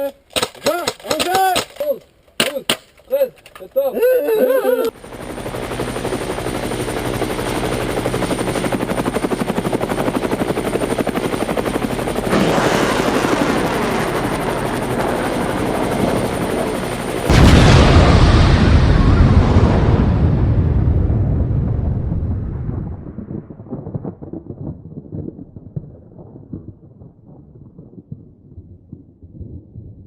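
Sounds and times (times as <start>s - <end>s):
helicopter rotor chopping: 4.9s - 17.8s
loud boom: 12.3s - 16.1s, 17.3s - 25.2s.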